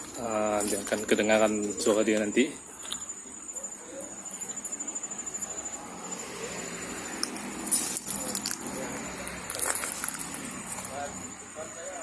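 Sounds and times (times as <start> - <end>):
high-pitched whine: 0.0 - 12.0.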